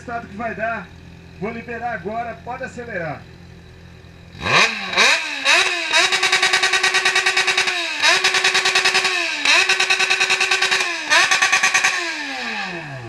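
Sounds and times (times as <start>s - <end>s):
motorcycle engine revving hard: 3.4s - 13.0s.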